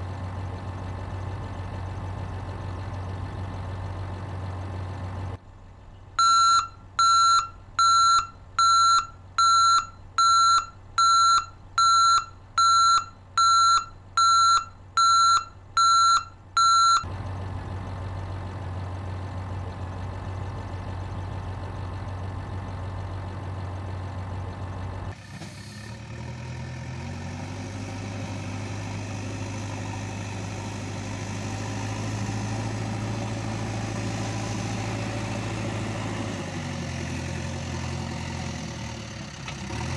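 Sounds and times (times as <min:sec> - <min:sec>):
diesel engine hum: 0:00.0 - 0:39.9
vehicle reversing alarm beeping: 0:06.2 - 0:17.1
second engine running: 0:16.7 - 0:39.9.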